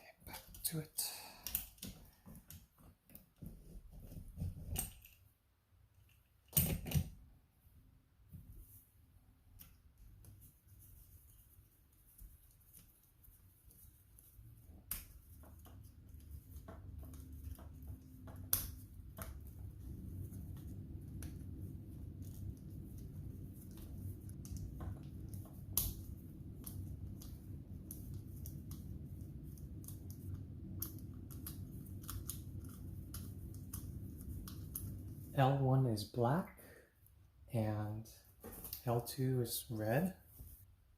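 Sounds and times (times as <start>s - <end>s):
low steady rumble: 10.4s - 40.9s.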